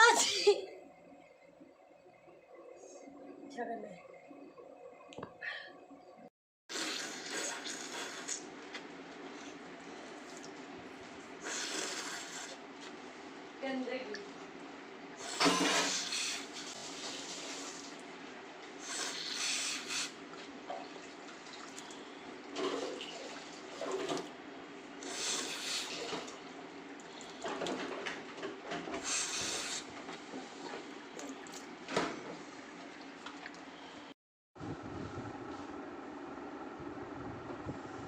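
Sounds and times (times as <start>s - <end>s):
woman blowing her nose: 11.4s - 12.6s.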